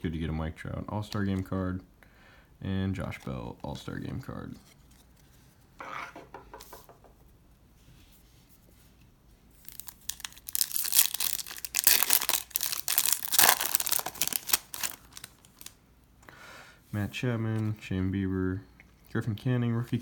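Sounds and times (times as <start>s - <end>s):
foil wrapper tearing and crinkling: 9.6s - 15.8s.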